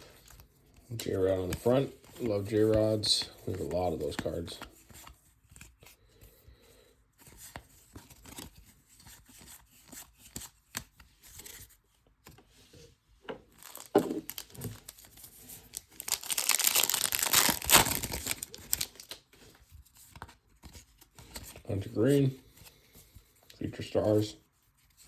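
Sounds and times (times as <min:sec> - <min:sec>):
trading cards rustling and clicking: 0:07.2 - 0:12.4, 0:13.4 - 0:21.6
foil pack tearing open: 0:13.6 - 0:15.1, 0:15.7 - 0:19.2.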